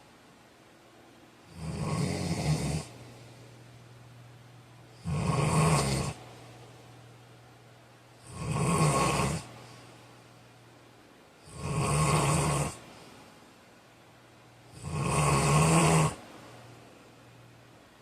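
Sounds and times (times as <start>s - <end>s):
faint steady hum: 0.0s - 18.0s
man snoring loudly: 1.5s - 2.9s, 5.0s - 6.2s, 8.2s - 9.5s, 11.4s - 12.8s, 14.7s - 16.2s.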